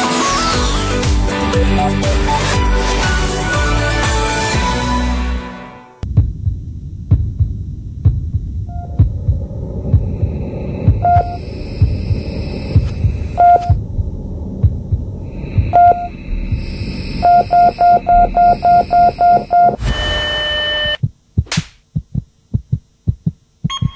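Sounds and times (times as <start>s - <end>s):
low pulsing thumps: 6.0s - 19.8s, 20.8s - 23.9s
steady electronic tones: 6.0s - 21.2s
steady hum: 6.0s - 23.9s
burst of noise: 8.6s - 18.1s
short high beeps: 11.0s - 11.4s, 13.4s - 13.8s, 15.8s - 16.1s, 17.2s - 21.0s, 23.7s - 23.9s.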